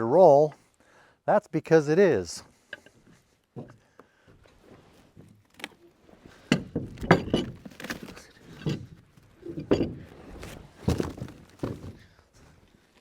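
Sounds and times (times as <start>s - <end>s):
log rolling with knocks and thuds: 2.8s - 13.0s.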